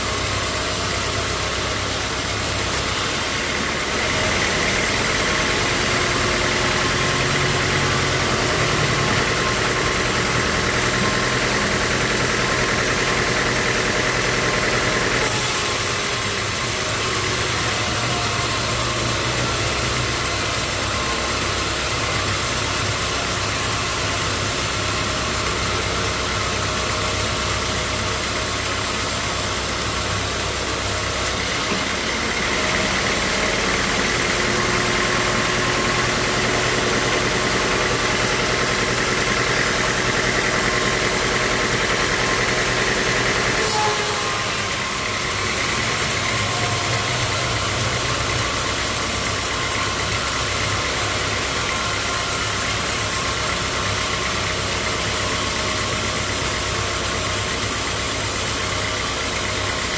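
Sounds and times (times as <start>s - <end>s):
sawmill machinery running: 0.0s - 59.9s
high-pitched whine: 42.8s - 54.2s.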